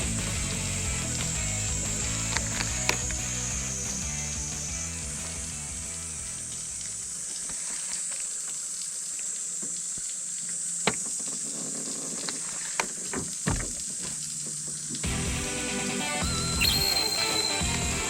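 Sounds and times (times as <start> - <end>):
background music: 0.0 - 7.0, 15.0 - 18.0
water hissing: 16.3 - 18.0.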